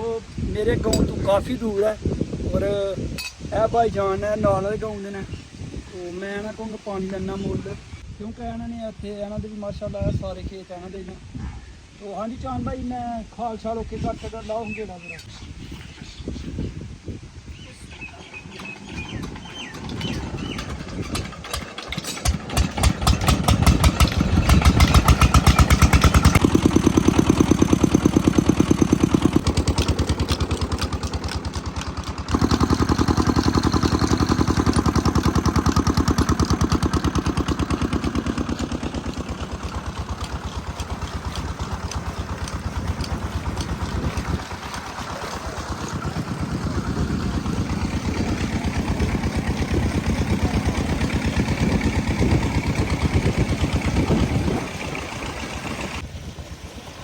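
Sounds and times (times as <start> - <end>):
diesel engine running: 18.0 - 56.1.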